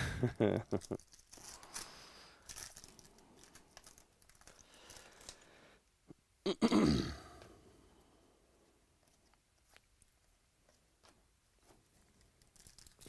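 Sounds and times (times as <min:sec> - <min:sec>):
cards and wrappers rustling: 0:00.6 - 0:05.6, 0:09.0 - 0:13.0.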